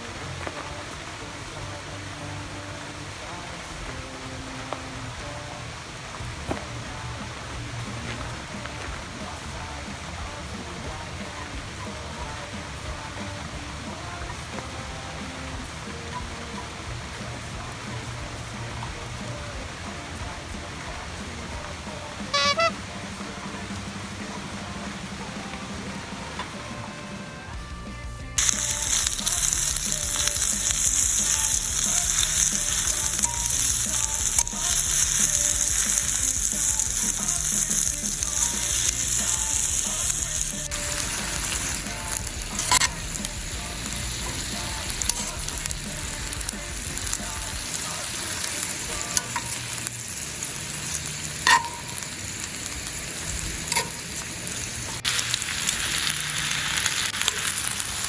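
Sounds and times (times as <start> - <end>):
rice sizzling in a pan: 6.2 - 27.3, 28.4 - 58.0.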